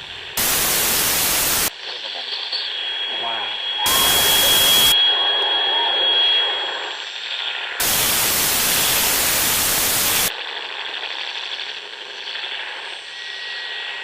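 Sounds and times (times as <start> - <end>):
harsh static hiss bursts: 0.0 - 3.0, 3.8 - 5.0, 7.1 - 13.2
faint high whine: 0.0 - 14.0.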